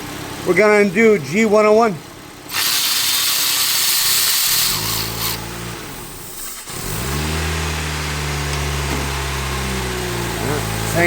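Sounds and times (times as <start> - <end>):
car engine running: 2.0 - 11.0
loud hiss: 2.5 - 5.4.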